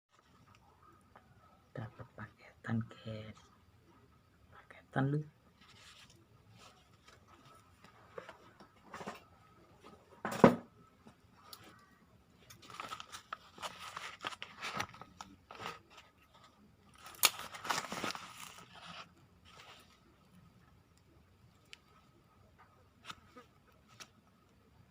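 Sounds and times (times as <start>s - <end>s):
packaging being torn open: 17.0s - 19.0s.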